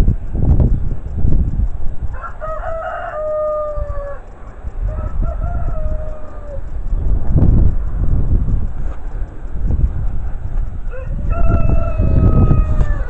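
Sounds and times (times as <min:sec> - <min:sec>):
steady low rumble: 0:00.0 - 0:13.0
rooster crowing: 0:02.1 - 0:06.7, 0:10.8 - 0:13.0.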